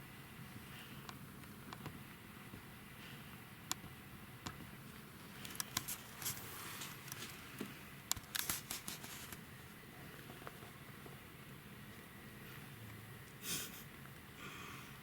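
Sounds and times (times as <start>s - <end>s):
kitten rustling in bedding: 8.4s - 9.4s.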